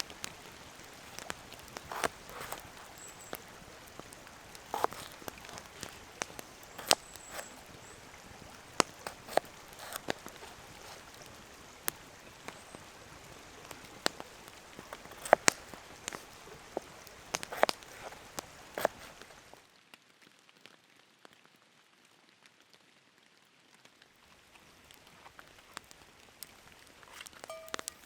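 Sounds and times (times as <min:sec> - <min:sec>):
large raindrops tapping: 0:00.0 - 0:19.6
light rain hissing: 0:00.0 - 0:28.0.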